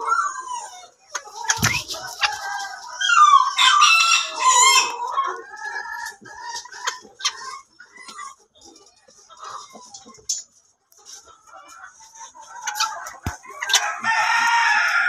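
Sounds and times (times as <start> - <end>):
chickens clucking: 0.0 - 15.0
rooster crowing: 13.8 - 15.0.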